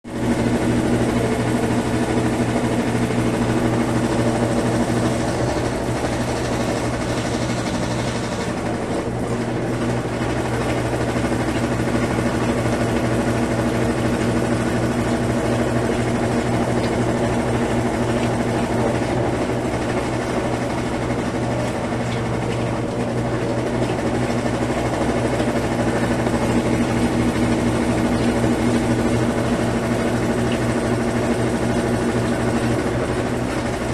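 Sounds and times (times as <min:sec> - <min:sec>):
washing machine spinning: 0:00.1 - 0:33.9.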